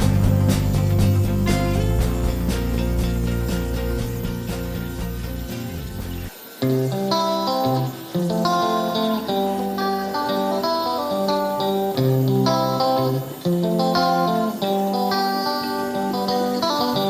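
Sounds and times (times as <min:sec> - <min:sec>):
bass line: 0:00.0 - 0:06.3
guitar-led background music: 0:00.0 - 0:17.0.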